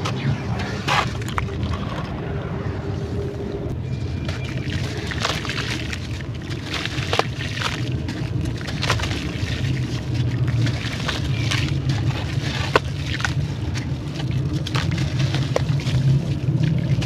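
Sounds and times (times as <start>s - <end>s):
steady low hum: 0.0s - 17.0s
clay crumbling and crunching: 3.9s - 17.0s.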